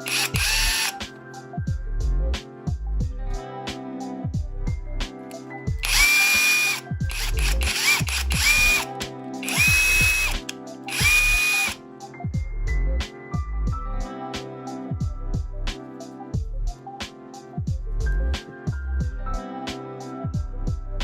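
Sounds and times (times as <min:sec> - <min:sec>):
impact wrench motor whining: 0:00.0 - 0:01.0, 0:05.8 - 0:11.8.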